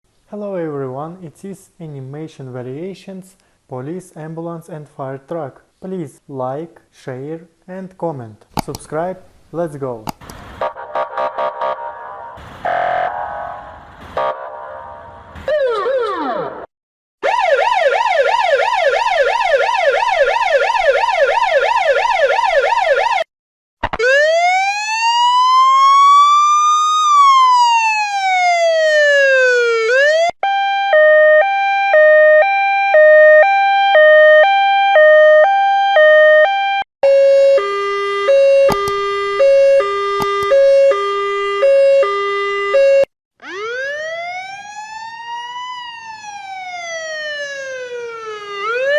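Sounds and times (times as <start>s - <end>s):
emergency siren yelp and wail: 10.6s - 23.3s, 23.9s - 48.9s.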